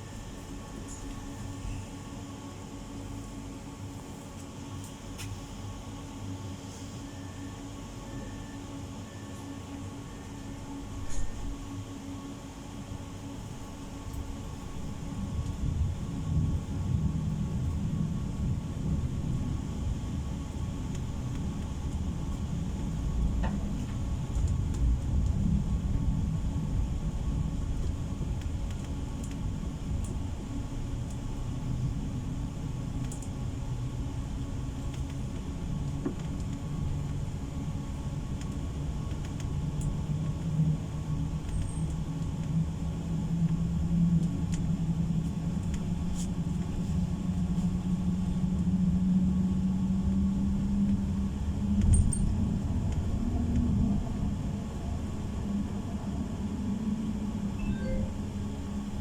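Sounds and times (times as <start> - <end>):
low drive hum: 50.5 - 59.0.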